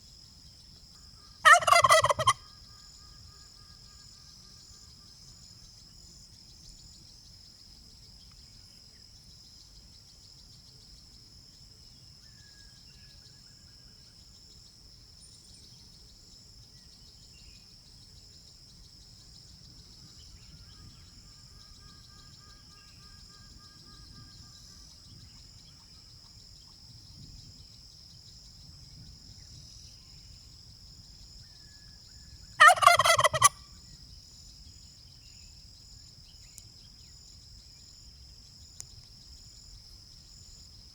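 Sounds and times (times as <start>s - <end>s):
insect chirring: 0.7s - 5.8s, 29.4s - 40.9s
turkey gobbling: 1.4s - 2.4s, 32.6s - 33.6s
faint bird calls: 32.5s - 33.6s.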